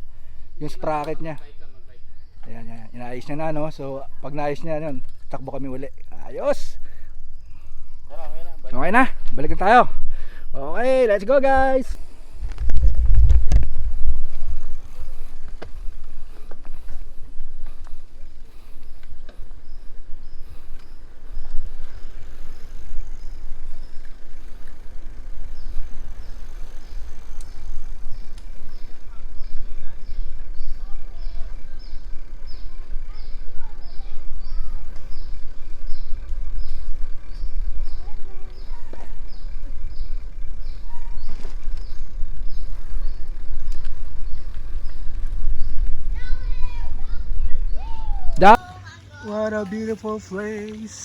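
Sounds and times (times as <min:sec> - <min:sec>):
bicycle clicks and rattles: 0:00.0 - 0:01.6, 0:02.3 - 0:47.7
wind buffeting microphone: 0:12.3 - 0:48.5.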